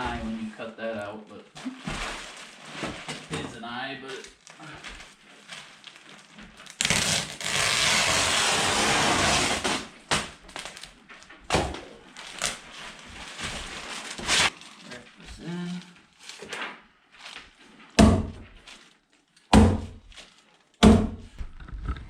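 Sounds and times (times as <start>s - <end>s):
wrap tearing: 4.4s - 10.9s, 13.4s - 15.0s.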